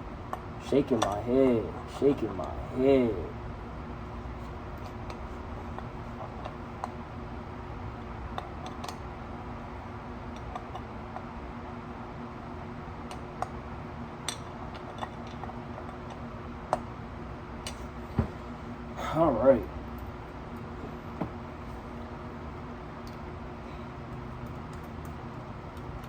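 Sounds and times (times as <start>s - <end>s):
steady low hum: 0.0s - 26.0s
hand tools and metal parts clicking: 0.9s - 1.4s.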